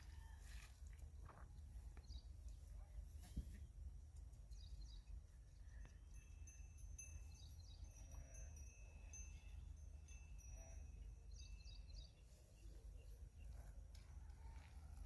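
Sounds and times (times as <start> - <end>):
faint high-pitched chirps: 4.3 - 14.7.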